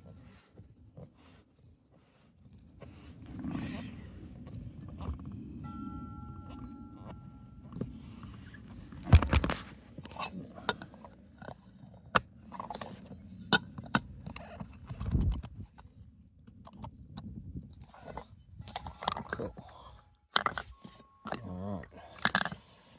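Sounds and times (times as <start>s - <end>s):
low steady hum: 2.9s - 16.2s.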